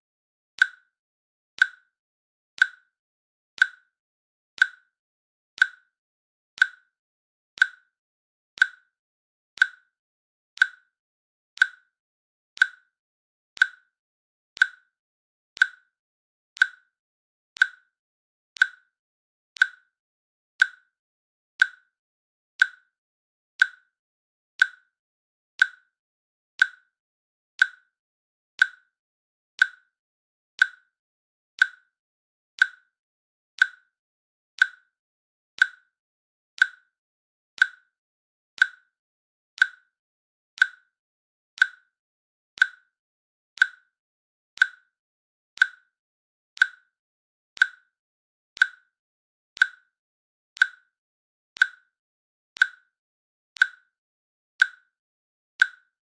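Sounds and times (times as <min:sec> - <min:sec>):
timer clicking: 0:00.6 - 0:00.9, 0:01.6 - 0:01.9, 0:02.6 - 0:02.9, 0:03.6 - 0:03.9, 0:04.6 - 0:04.9, 0:05.6 - 0:05.9, 0:06.6 - 0:06.9, 0:07.6 - 0:07.9, 0:08.6 - 0:08.9, 0:09.6 - 0:09.9, 0:10.6 - 0:11.0, 0:11.6 - 0:12.0, 0:12.6 - 0:13.0, 0:13.6 - 0:13.9, 0:14.6 - 0:15.0, 0:15.6 - 0:16.0, 0:16.6 - 0:17.0, 0:17.6 - 0:17.9, 0:18.6 - 0:18.9, 0:19.6 - 0:20.0, 0:20.6 - 0:21.0, 0:21.6 - 0:21.9, 0:22.6 - 0:22.9, 0:23.6 - 0:23.9, 0:24.6 - 0:24.9, 0:25.6 - 0:26.0, 0:26.6 - 0:26.9, 0:27.6 - 0:28.0, 0:28.6 - 0:29.0, 0:29.6 - 0:30.0, 0:30.6 - 0:31.0, 0:31.6 - 0:32.0, 0:32.6 - 0:33.0, 0:33.6 - 0:34.0, 0:34.6 - 0:35.0, 0:35.6 - 0:36.0, 0:36.6 - 0:37.0, 0:37.6 - 0:38.0, 0:38.6 - 0:39.0, 0:39.6 - 0:40.0, 0:40.6 - 0:41.0, 0:41.6 - 0:42.0, 0:42.6 - 0:43.0, 0:43.6 - 0:44.0, 0:44.6 - 0:45.0, 0:45.6 - 0:46.0, 0:46.6 - 0:47.0, 0:47.6 - 0:48.0, 0:48.6 - 0:49.0, 0:49.6 - 0:50.0, 0:50.6 - 0:51.0, 0:51.6 - 0:52.0, 0:52.6 - 0:53.0, 0:53.6 - 0:53.9, 0:54.6 - 0:54.9, 0:55.6 - 0:56.0.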